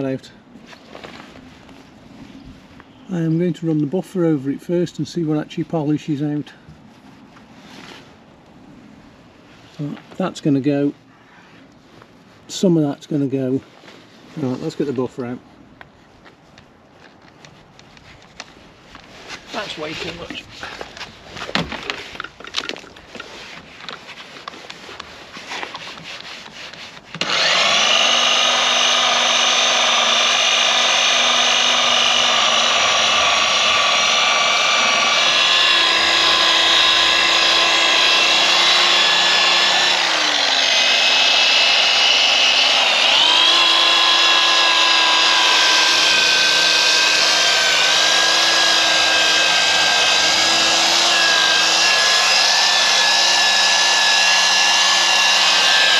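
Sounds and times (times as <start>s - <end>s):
electric polishing machine whining: 27.2s - 55.9s.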